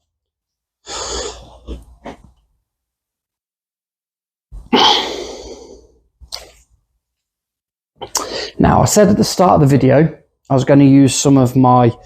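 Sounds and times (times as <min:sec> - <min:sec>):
short breath: 0:08.1 - 0:08.6.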